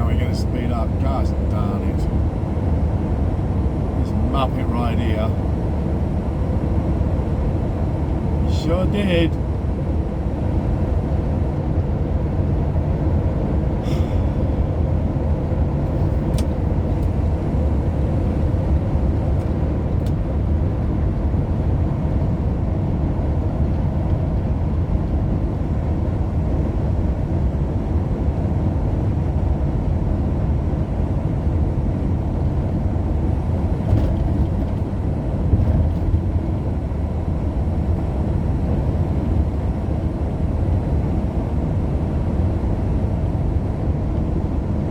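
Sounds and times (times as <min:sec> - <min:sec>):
car road and engine rumble: 0:00.0 - 0:44.9.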